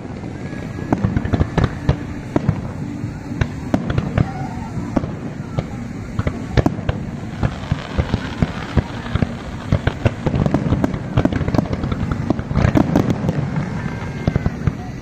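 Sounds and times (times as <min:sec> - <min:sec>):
fireworks bangs and crackling pops: 0:00.0 - 0:15.0
steady background noise: 0:00.0 - 0:15.0.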